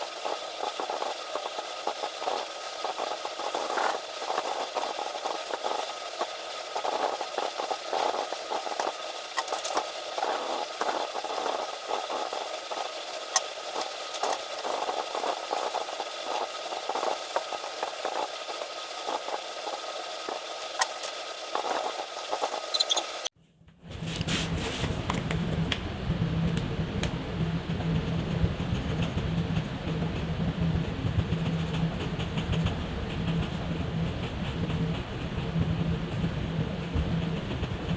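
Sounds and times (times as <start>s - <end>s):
felt-tip markers scratching paper: 20.6s - 23.1s
scratchy sound: 23.9s - 25.7s.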